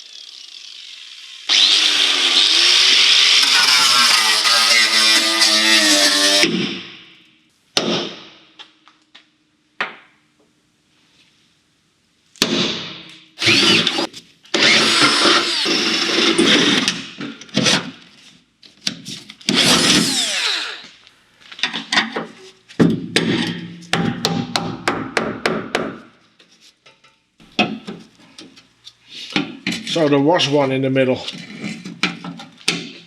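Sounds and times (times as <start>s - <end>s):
handheld power tool running: 0.0s - 6.5s, 13.4s - 16.9s, 19.5s - 21.0s.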